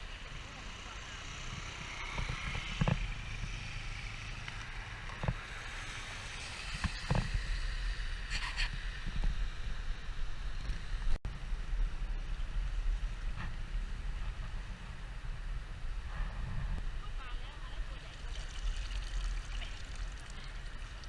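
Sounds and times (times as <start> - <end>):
wind buffeting microphone: 11.8 - 17.2
floodwater rushing: 17.9 - 21.0.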